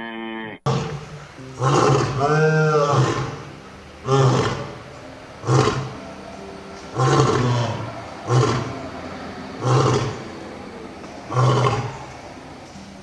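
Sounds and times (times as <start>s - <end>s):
large animal roaring grunts: 0.7s - 4.8s, 5.4s - 6.0s, 6.9s - 8.8s, 9.6s - 10.3s, 11.3s - 12.1s.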